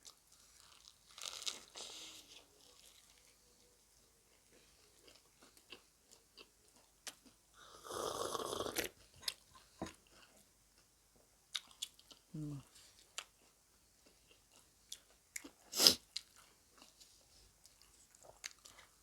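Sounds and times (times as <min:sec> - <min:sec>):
person chewing food: 0:00.0 - 0:03.4, 0:04.3 - 0:07.4, 0:11.5 - 0:19.0.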